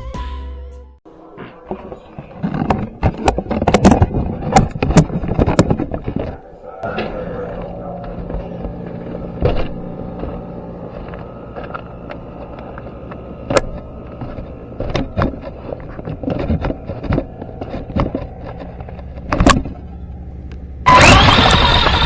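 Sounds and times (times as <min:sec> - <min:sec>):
sharp clicks and knocks: 0:02.4 - 0:06.4, 0:11.0 - 0:19.8
toy electric motor humming: 0:20.8 - 0:22.0.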